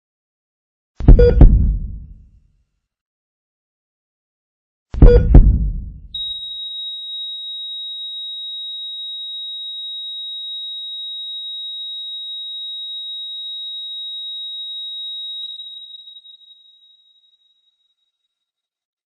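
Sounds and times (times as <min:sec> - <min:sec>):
monitor flatline beep: 0:06.2 - 0:17.6.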